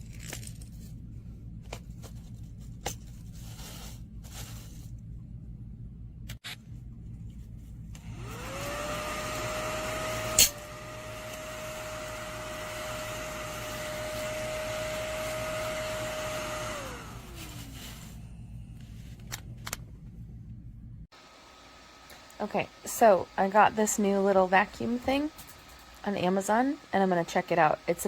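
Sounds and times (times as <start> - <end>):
vacuum cleaner motor whine: 7.8 - 18.8.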